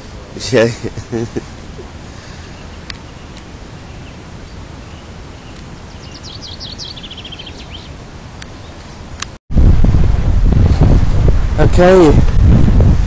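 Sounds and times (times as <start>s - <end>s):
songbird trilling: 2.4s - 8.8s.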